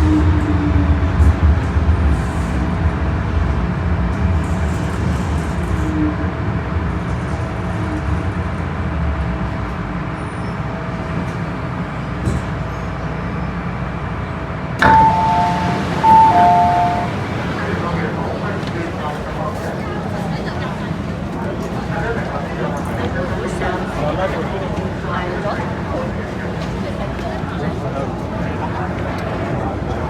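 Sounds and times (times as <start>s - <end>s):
train rumbling underground: 0.0s - 30.0s
two-note chime: 14.8s - 17.4s.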